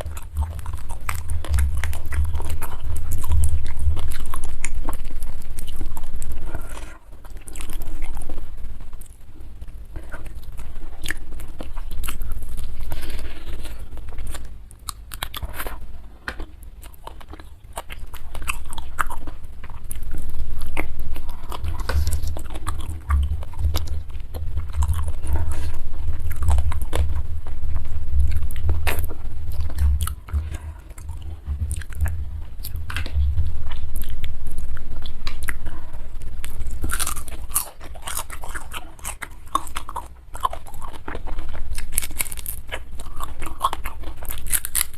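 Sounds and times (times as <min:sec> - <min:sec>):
low rumble: 0:00.0 - 0:09.6, 0:18.2 - 0:37.6
chewing and biting food: 0:00.0 - 0:44.9.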